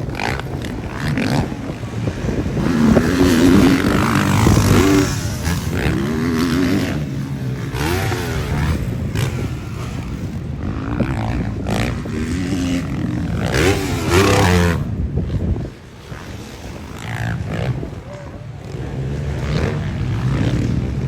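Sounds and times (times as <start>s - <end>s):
motorbike engine revving: 0.0s - 21.0s.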